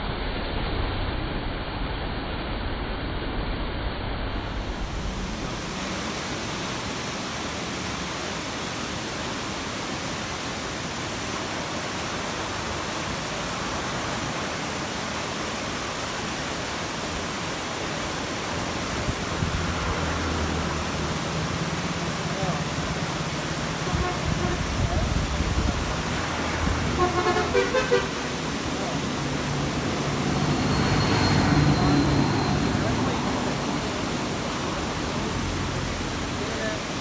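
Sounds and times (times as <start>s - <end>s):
low rumble: 0.0s - 6.6s
river water rushing: 4.4s - 37.0s.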